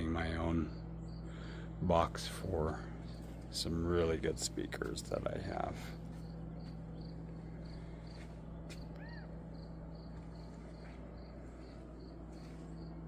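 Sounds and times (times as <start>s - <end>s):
steady low hum: 0.0s - 13.0s
rising-and-falling chirp: 6.1s - 13.0s
faint high chirp: 8.8s - 10.9s.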